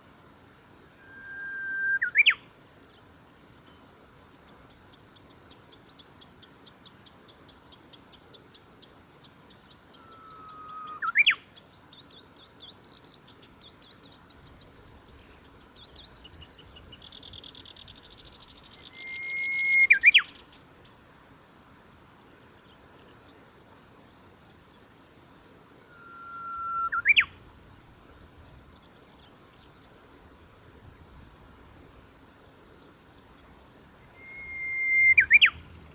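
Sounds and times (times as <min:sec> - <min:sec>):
bush warbler singing: 0:01.0 - 0:21.1, 0:25.9 - 0:35.9.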